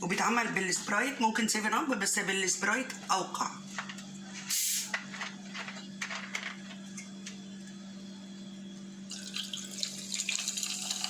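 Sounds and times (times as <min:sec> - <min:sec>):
soda fizzing in a glass: 0:09.1 - 0:11.0.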